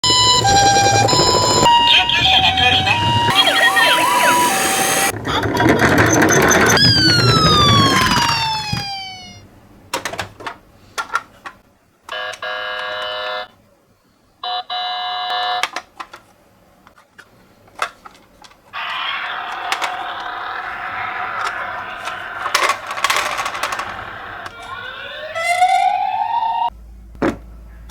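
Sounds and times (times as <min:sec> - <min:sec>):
short electronic tone blasts: 0:00.0 - 0:05.1, 0:06.7 - 0:09.4
toy electronic siren: 0:00.0 - 0:05.2, 0:05.9 - 0:09.4, 0:12.1 - 0:13.5, 0:18.8 - 0:26.7
clicks: 0:03.3 - 0:09.4, 0:18.8 - 0:24.9
toy wheels rattling: 0:04.8 - 0:09.3, 0:18.8 - 0:25.9.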